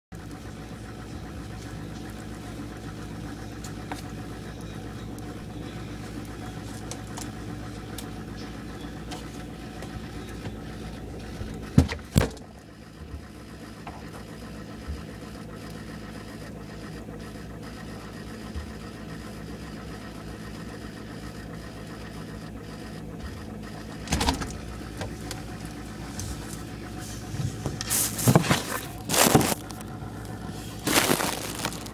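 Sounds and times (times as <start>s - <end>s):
refrigerator humming: 0.1s - 31.9s
rustles: 26.0s - 31.9s.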